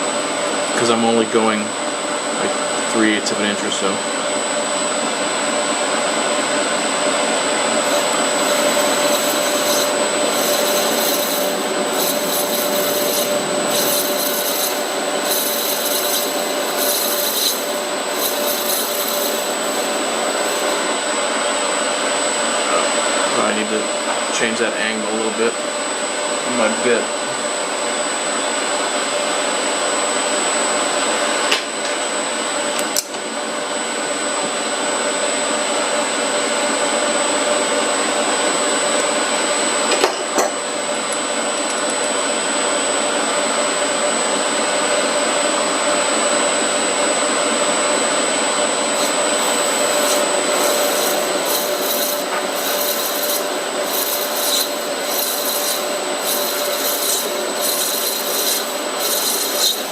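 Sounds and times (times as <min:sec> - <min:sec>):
metalworking machine rasping: 0:07.8 - 0:20.9, 0:49.0 - 0:59.9
rapid high-pitched crackle: 0:07.8 - 0:20.9, 0:49.0 - 0:59.9.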